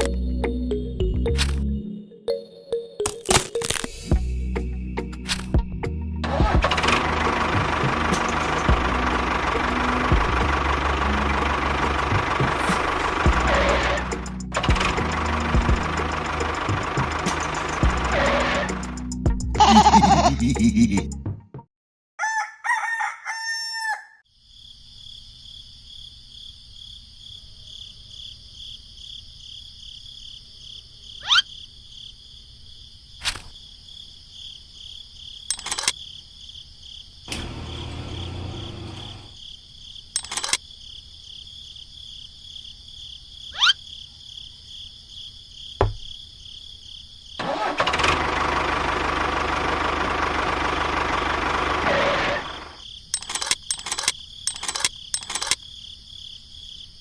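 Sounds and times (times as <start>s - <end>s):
small engine humming and whining: 6.2s - 19.2s, 37.3s - 39.4s, 47.4s - 55.6s
sharp knocks: 45.8s - 46.1s.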